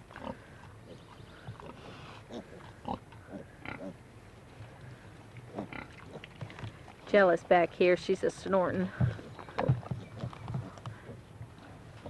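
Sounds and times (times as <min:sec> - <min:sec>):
pigs grunting: 0:00.0 - 0:04.0, 0:04.8 - 0:06.5, 0:08.9 - 0:12.0.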